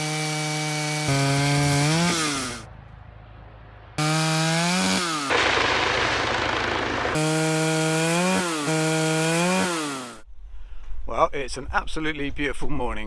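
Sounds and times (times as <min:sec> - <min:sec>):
chainsaw cutting log: 0:00.0 - 0:02.7, 0:04.0 - 0:10.2
chainsaw revving: 0:00.0 - 0:02.7, 0:04.0 - 0:10.2.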